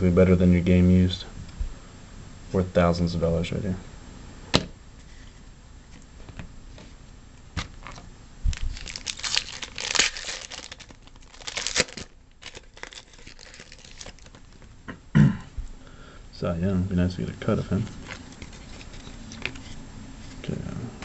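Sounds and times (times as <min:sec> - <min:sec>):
wrapper tearing and crinkling: 0:07.6 - 0:14.7.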